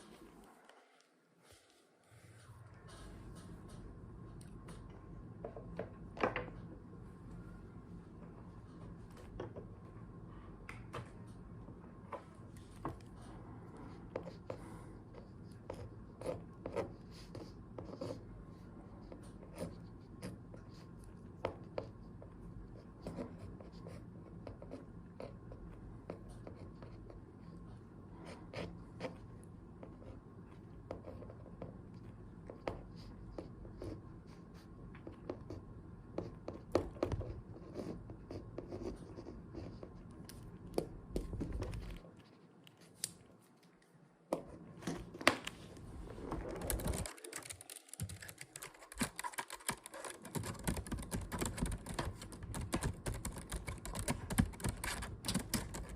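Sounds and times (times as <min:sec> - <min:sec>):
low steady hum: 0:00.0 - 0:55.9
pen scratching on paper: 0:13.8 - 0:18.3, 0:22.6 - 0:27.5, 0:36.2 - 0:40.0.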